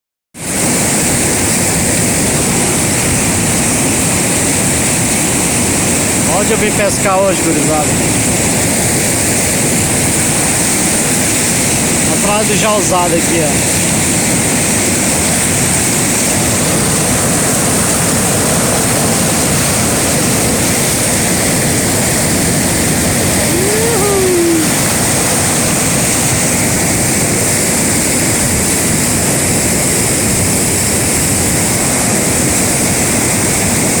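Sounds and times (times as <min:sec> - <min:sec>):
waterfall roaring: 0:00.4 - 0:34.0
rising and falling tone: 0:23.4 - 0:24.8.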